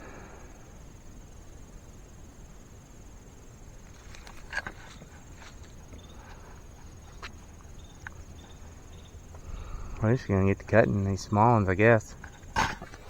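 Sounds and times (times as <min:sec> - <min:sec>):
insects trilling: 0:00.0 - 0:13.0.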